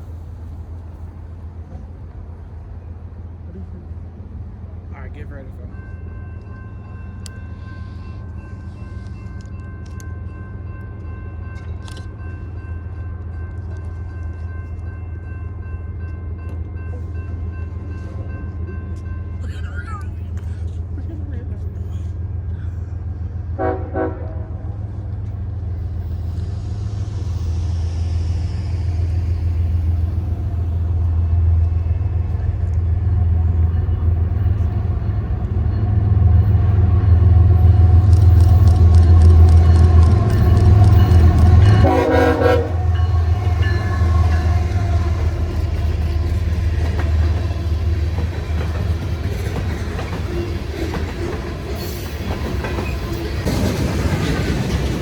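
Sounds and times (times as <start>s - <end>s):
diesel locomotive rumble: 0.0s - 55.0s
locomotive horn: 23.5s - 24.8s, 36.2s - 47.4s
wheels clicking over rail joints: 43.0s - 55.0s.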